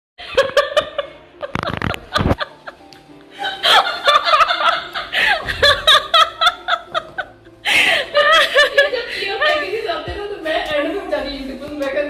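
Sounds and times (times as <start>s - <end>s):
people laughing: 0.2s - 9.8s
background music: 0.2s - 12.0s.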